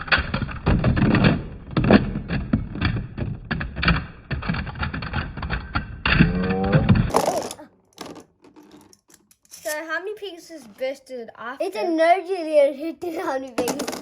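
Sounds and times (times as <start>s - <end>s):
spinning tops clattering: 7.1s - 9.8s, 13.6s - 14.0s.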